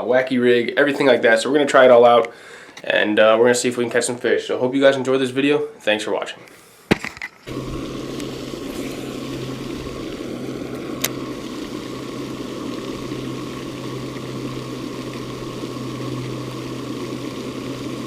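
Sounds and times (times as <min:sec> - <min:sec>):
faint high whine: 0:07.4 - 0:18.0
low mechanical hum: 0:07.5 - 0:18.0.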